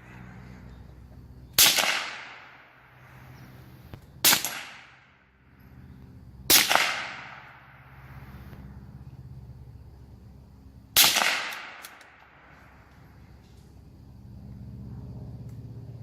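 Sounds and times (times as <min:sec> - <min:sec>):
rifle shots echoing: 0:01.6 - 0:03.0, 0:04.2 - 0:05.2, 0:06.5 - 0:07.9, 0:11.0 - 0:12.7.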